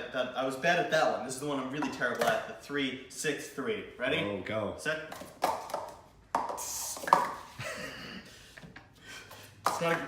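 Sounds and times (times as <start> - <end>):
plastic cups clattering: 1.6 - 2.6, 5.0 - 7.7, 8.5 - 10.0.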